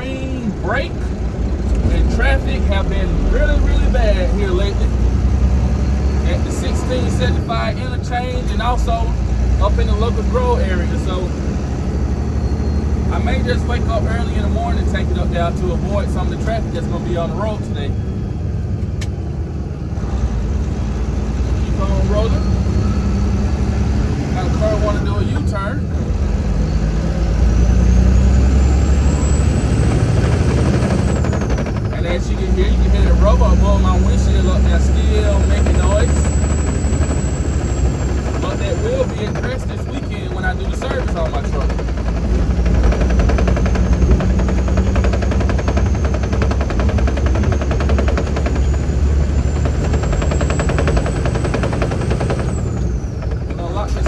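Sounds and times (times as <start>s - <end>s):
man talking: 0.0s - 1.2s, 1.8s - 5.0s, 6.2s - 11.4s, 13.1s - 18.0s, 21.6s - 22.6s, 24.3s - 25.9s, 31.9s - 36.2s, 38.4s - 41.8s, 53.5s - 54.0s
truck diesel engine running: 0.0s - 54.0s.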